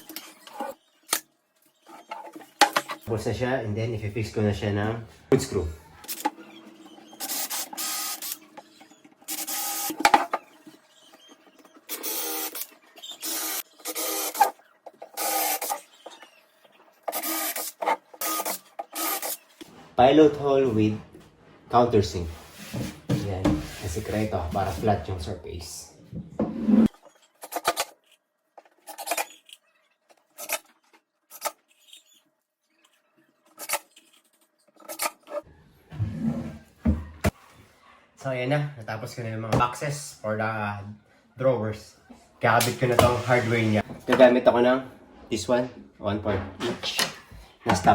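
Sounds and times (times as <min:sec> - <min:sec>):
cordless drill running: 0:07.2 - 0:08.4, 0:09.3 - 0:09.9, 0:11.9 - 0:12.6, 0:13.2 - 0:14.4, 0:15.2 - 0:15.7, 0:17.1 - 0:19.3.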